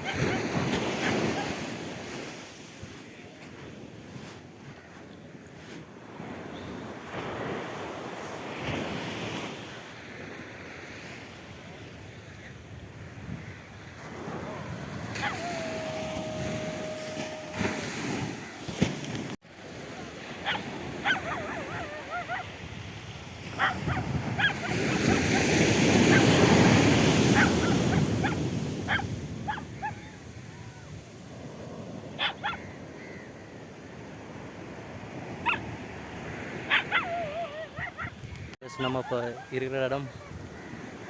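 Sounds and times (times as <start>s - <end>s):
surf washing up the beach: 0.0s - 41.0s
short high wavering yelps: 15.1s - 18.1s, 20.4s - 22.5s, 36.7s - 38.1s.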